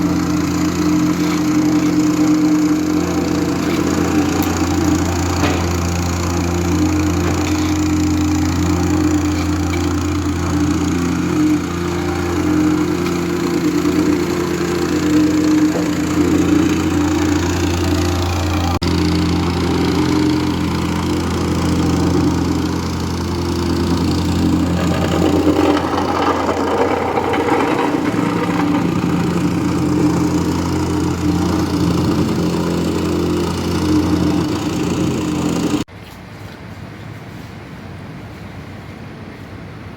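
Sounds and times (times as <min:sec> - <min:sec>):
paving machinery engine running: 0:00.0 - 0:35.9
rough noisy machine sound: 0:00.0 - 0:35.9.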